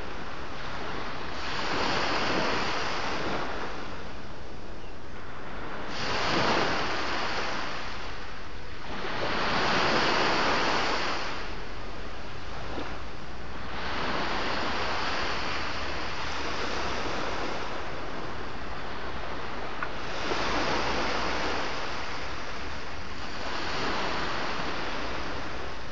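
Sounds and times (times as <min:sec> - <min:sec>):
low rumble of surf: 0:00.0 - 0:25.9
waves breaking: 0:00.0 - 0:25.9.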